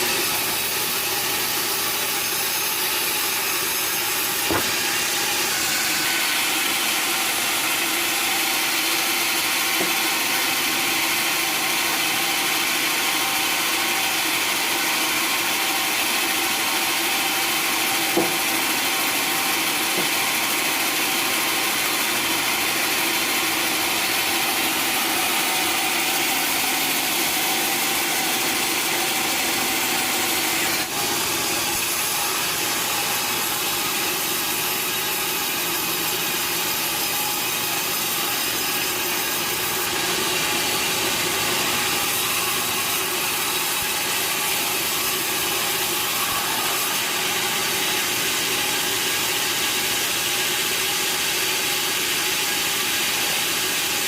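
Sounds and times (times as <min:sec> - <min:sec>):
sawmill saw cutting timber: 0:00.0 - 0:54.0
sharp knock: 0:04.4 - 0:05.0.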